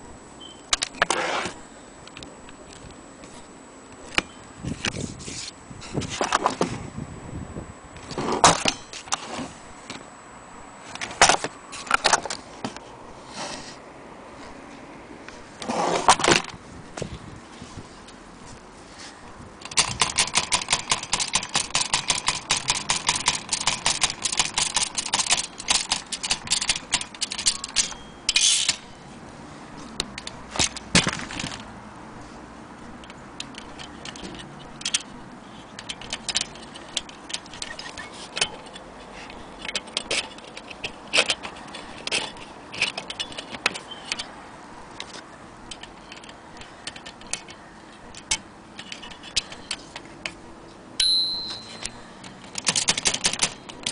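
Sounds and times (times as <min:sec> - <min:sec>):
typewriter keystrokes: 0:52.4 - 0:53.9.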